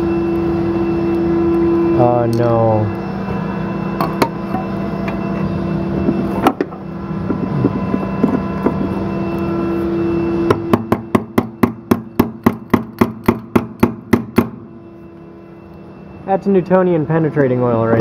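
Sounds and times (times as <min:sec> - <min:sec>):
steady hum: 0:00.0 - 0:18.0
hammer striking metal part: 0:10.5 - 0:14.7.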